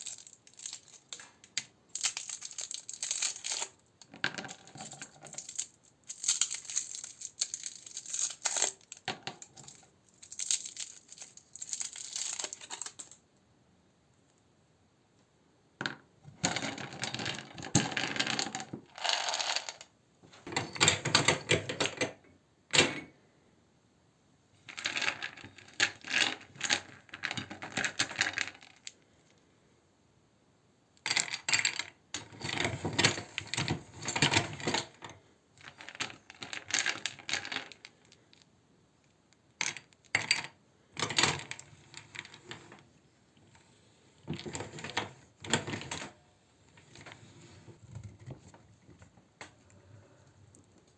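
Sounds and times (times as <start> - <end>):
hard candy crunching in a grinder: 0.0 - 1.3, 1.9 - 3.8, 4.4 - 13.1.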